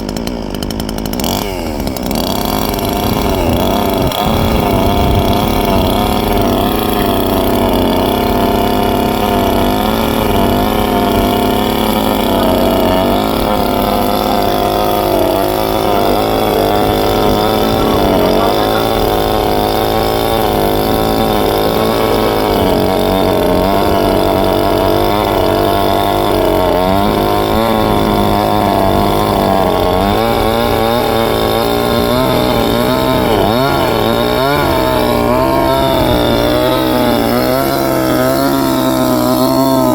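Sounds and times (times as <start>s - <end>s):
chainsaw cutting into tree: 0.0s - 39.9s.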